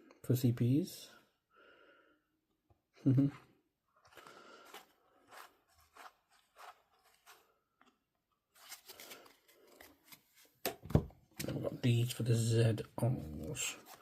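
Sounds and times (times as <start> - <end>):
trading cards shuffling: 4.0 - 7.6, 8.5 - 11.6, 13.0 - 14.0.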